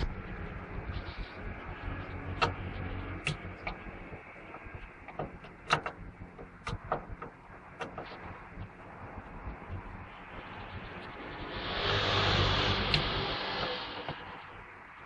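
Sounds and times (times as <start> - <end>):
low steady rumble: 0.0 - 15.0
tools and parts clicking and knocking: 4.5 - 8.2.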